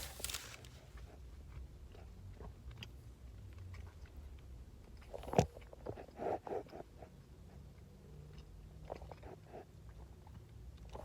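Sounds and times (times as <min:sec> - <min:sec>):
wet chewing: 0:00.0 - 0:07.2
faint low hum: 0:00.0 - 0:11.0.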